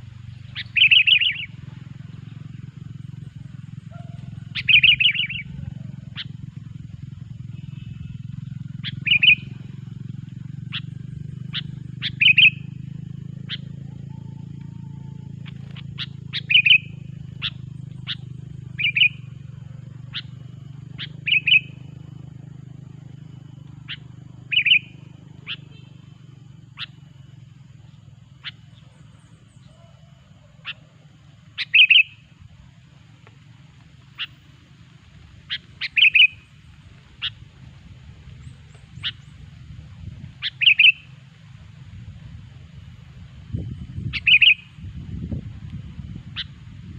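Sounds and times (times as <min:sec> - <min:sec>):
low background rumble: 0:00.0 - 0:46.9
bird chirping: 0:00.2 - 0:06.5, 0:07.2 - 0:09.8, 0:10.6 - 0:32.3, 0:34.1 - 0:34.5, 0:35.4 - 0:37.4, 0:38.3 - 0:41.2, 0:43.5 - 0:44.9, 0:46.3 - 0:46.6.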